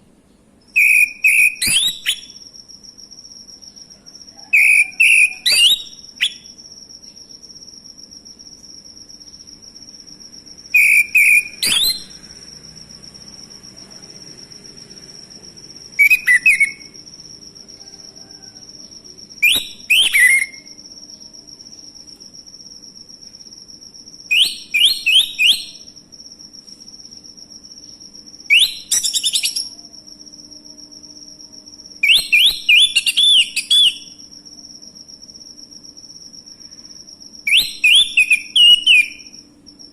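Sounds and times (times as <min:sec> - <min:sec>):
thrush singing whistled notes: 0:00.7 - 0:02.4, 0:04.4 - 0:06.6, 0:10.7 - 0:12.3, 0:15.9 - 0:17.0, 0:19.3 - 0:20.8, 0:24.3 - 0:26.0, 0:28.5 - 0:29.8, 0:32.0 - 0:34.3, 0:37.4 - 0:39.4.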